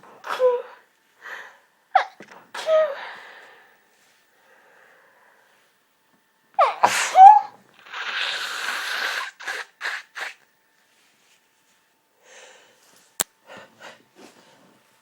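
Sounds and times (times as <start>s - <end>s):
person sneezing: 6.6s - 7.5s.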